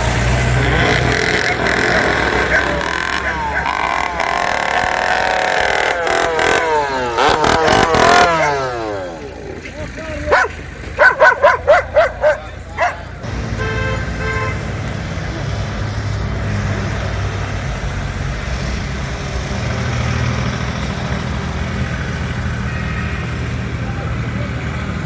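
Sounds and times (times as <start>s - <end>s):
tractor engine rumbling: 0.0s - 25.0s
dog barking: 10.3s - 13.2s.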